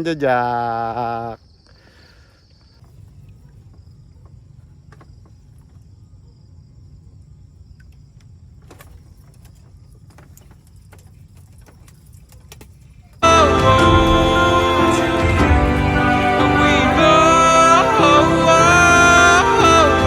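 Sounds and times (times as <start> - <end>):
insects chirping: 0.0 - 20.0
steady low rumble: 13.2 - 20.0.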